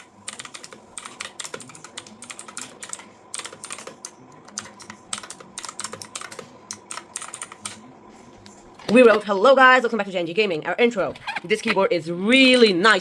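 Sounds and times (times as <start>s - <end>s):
typing on mechanical keyboard: 0.3s - 7.8s.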